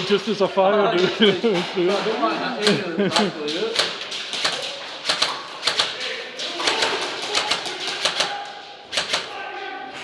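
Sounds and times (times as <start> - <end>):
airsoft guns firing: 1.9 - 9.4.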